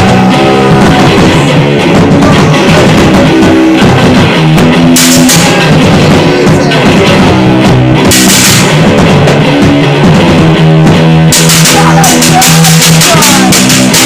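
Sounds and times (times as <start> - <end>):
noise-rock band playing: 0.0 - 14.0
cymbal crashes: 8.1 - 8.8.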